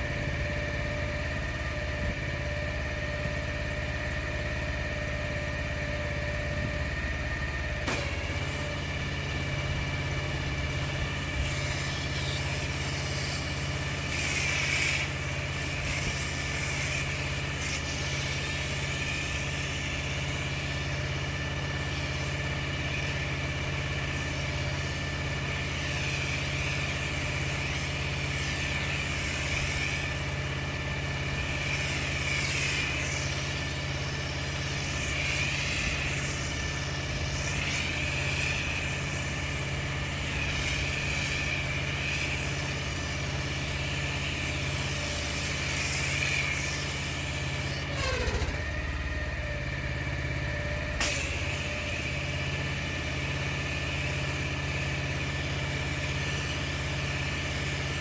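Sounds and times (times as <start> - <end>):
pressure washer engine running: 0.0 - 58.0
pressure washer spray hiss: 7.9 - 48.2, 51.0 - 58.0.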